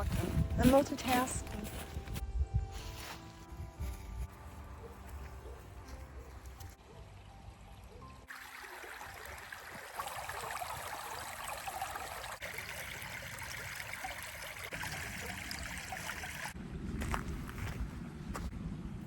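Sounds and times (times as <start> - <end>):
stream water trickling: 6.4 - 17.8.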